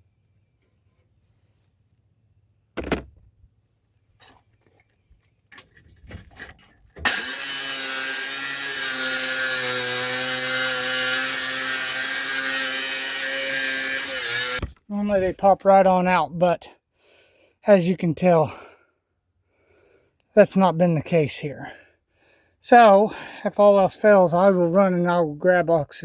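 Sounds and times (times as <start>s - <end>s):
angle grinder cutting: 7.0s - 14.7s.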